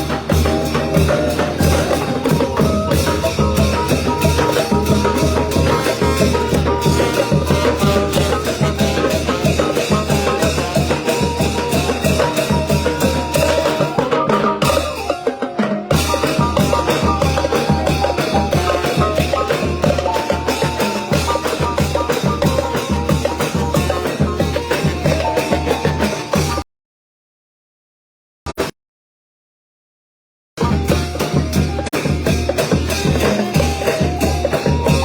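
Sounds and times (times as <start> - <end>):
bass drum beat: 0.0 - 13.7, 30.6 - 35.0
brass band playing: 0.0 - 15.1.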